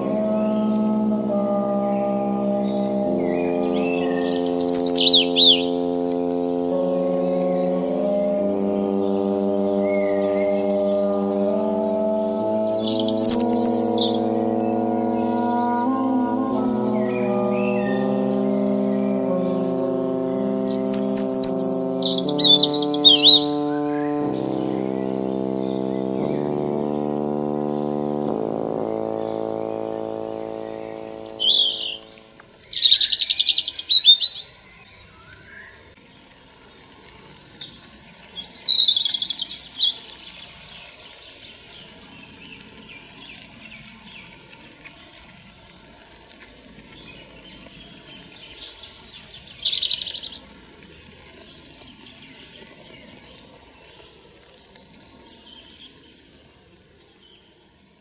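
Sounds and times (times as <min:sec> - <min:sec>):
background music notes: 0:00.0 - 0:32.9
robin singing: 0:00.0 - 0:35.7.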